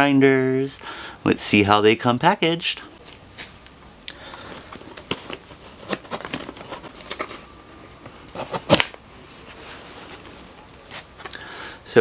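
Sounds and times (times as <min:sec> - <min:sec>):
package rustling: 0:03.0 - 0:11.4
package clattering: 0:04.1 - 0:09.0.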